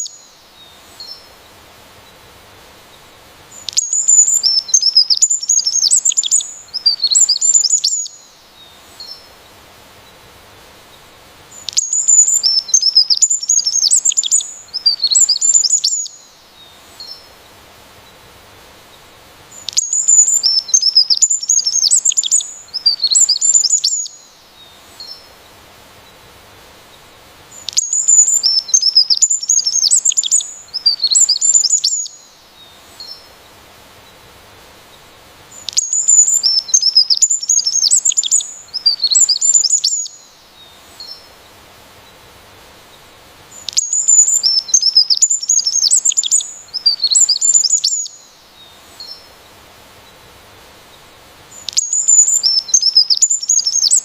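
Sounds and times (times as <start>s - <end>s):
songbird chirping and trilling: 0.0s - 1.3s, 3.5s - 9.4s, 11.5s - 17.3s, 19.5s - 25.4s, 27.5s - 33.3s, 35.5s - 41.4s, 43.5s - 49.4s, 51.5s - 54.0s.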